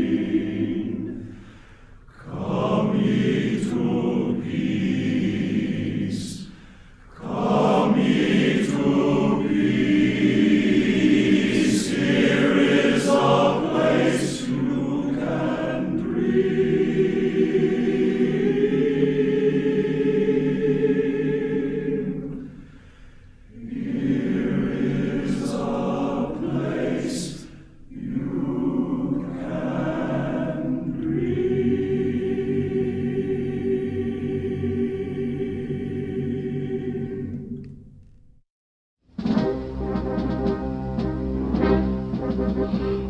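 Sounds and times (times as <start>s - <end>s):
choir singing held chord: 0.0s - 22.6s, 23.5s - 37.6s.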